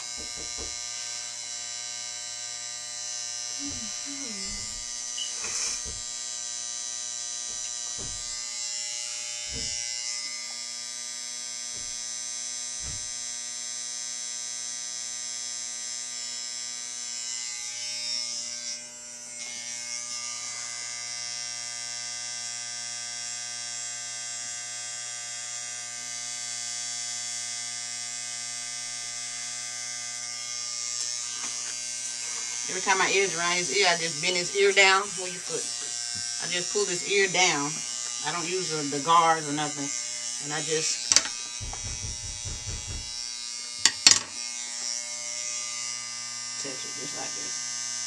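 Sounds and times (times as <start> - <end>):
short knocks: 0.0 - 0.8, 9.5 - 9.8, 41.1 - 43.2
electric hair clippers buzzing: 0.0 - 48.0.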